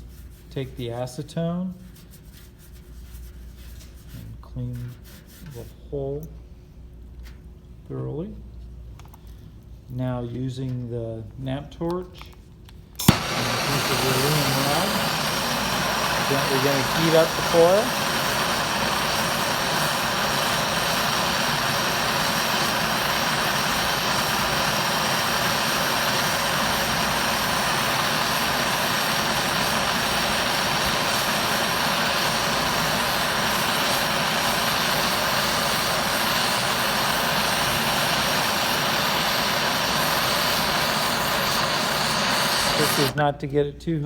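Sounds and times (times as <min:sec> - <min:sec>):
gas torch hissing: 0:13.0 - 0:43.2.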